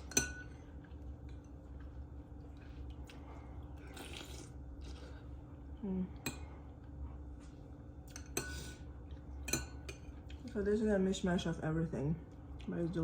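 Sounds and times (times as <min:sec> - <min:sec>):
person chewing food: 0:00.0 - 0:05.8
person humming mm: 0:05.8 - 0:06.2.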